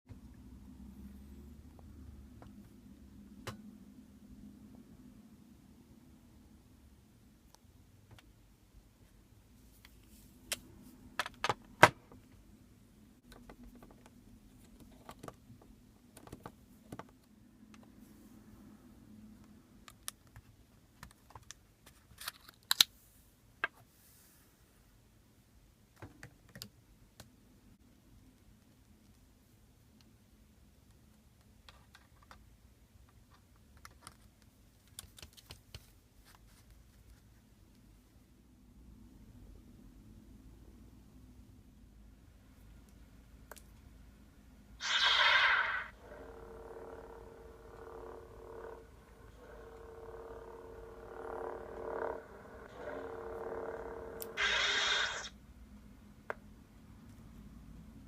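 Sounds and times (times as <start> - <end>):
faint low hum: 36.0 - 58.0.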